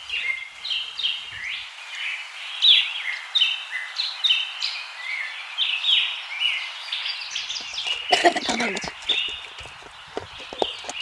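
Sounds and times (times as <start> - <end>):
steady hiss: 0.0 - 8.4
birds chirping: 0.0 - 11.0.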